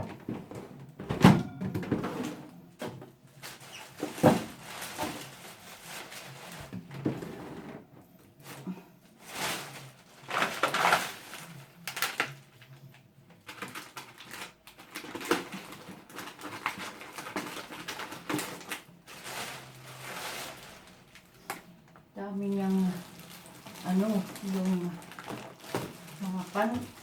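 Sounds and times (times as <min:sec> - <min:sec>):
items knocking down: 0:00.0 - 0:03.0
plastic rustling: 0:00.0 - 0:27.0.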